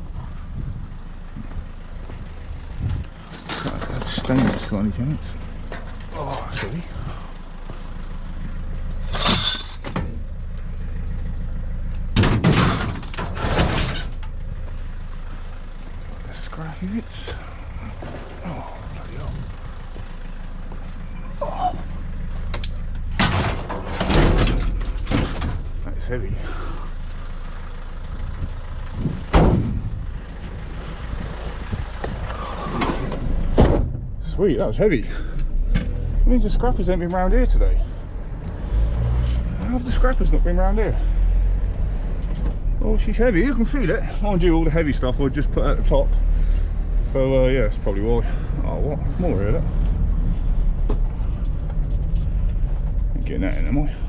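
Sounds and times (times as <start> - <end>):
van engine idling: 0.0 - 54.0
scrap metal clattering: 9.0 - 10.1, 12.2 - 14.2, 23.1 - 25.8.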